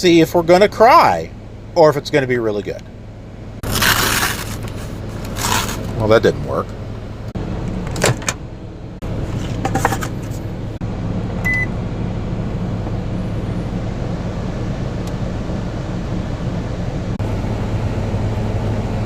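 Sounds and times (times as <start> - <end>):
microwave oven humming: 2.6 - 19.0
short beep: 11.4 - 11.7.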